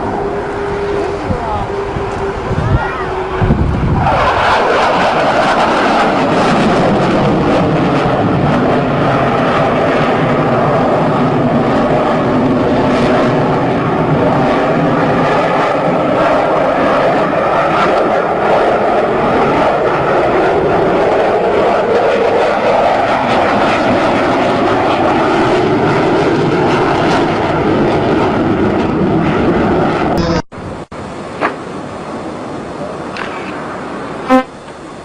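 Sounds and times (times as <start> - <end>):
fighter jet roar: 0.0 - 34.4.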